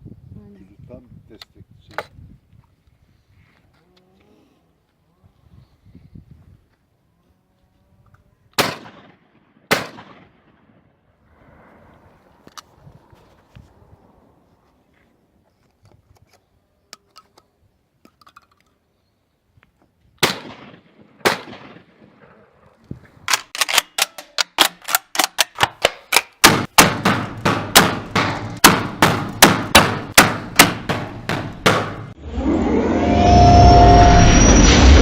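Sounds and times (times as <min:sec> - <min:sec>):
shotgun shots: 0:08.6 - 0:10.8, 0:20.2 - 0:22.3, 0:26.4 - 0:32.1
rapid sharp bangs: 0:26.4 - 0:32.2
low rumble: 0:32.1 - 0:35.0.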